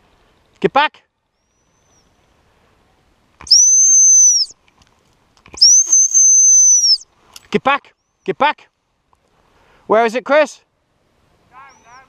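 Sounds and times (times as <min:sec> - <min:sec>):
dog whistle blasts: 0:03.4 - 0:04.5, 0:05.6 - 0:07.0.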